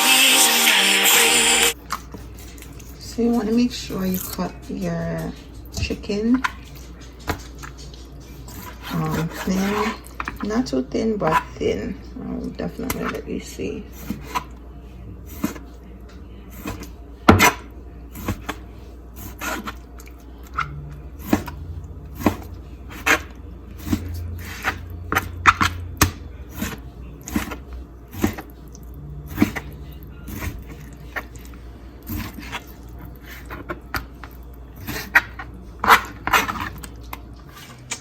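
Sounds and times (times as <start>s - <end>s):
knife chopping on cutting board: 16.6s - 17.6s.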